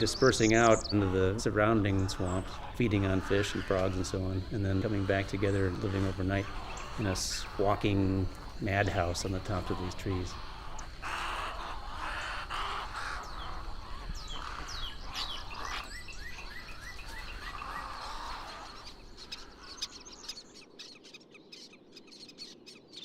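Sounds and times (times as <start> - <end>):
wading birds squawking and chirping: 0.0 - 23.0.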